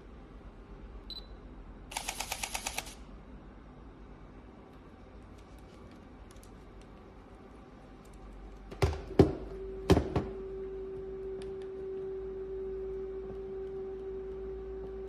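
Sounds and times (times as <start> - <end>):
camera motor hum: 1.9 - 3.0
camera sharp clicks: 1.9 - 3.0.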